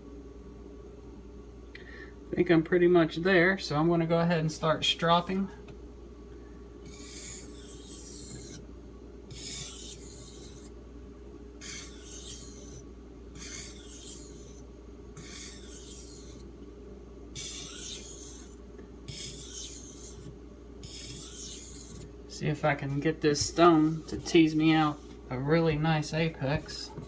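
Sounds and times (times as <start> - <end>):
knife scraping on wet whetstone: 6.9 - 8.6, 9.3 - 10.7, 11.6 - 12.8, 13.4 - 14.6, 15.2 - 16.5, 17.4 - 22.1, 23.0 - 25.2.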